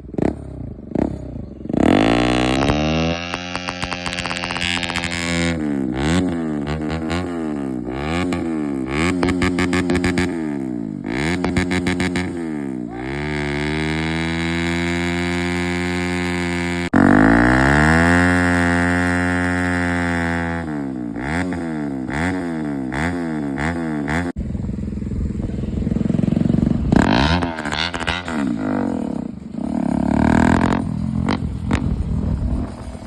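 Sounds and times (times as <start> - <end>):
motorcycle engine revving: 0.0 - 33.0.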